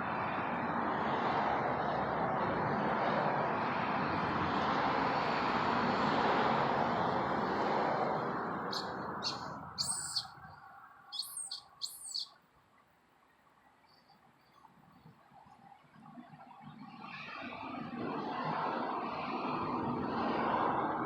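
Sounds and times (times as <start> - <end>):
high bird chirps: 8.7 - 10.5, 11.1 - 12.4.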